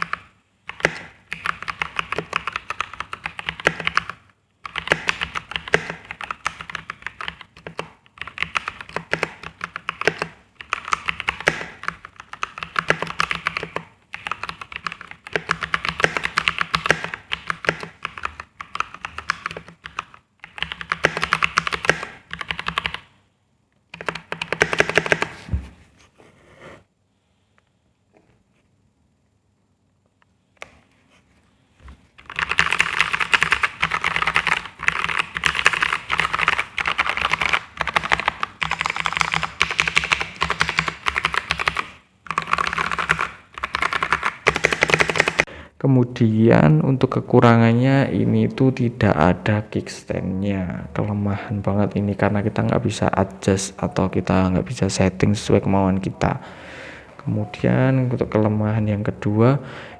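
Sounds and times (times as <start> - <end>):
mechanical keyboard typing: 0.0 - 23.1, 23.9 - 25.4, 32.2 - 45.5.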